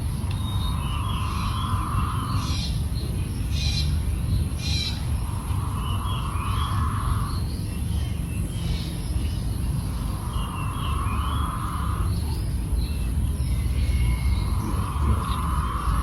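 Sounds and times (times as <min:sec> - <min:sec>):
low rumble: 0:00.0 - 0:16.0
quail cooing: 0:14.1 - 0:16.0.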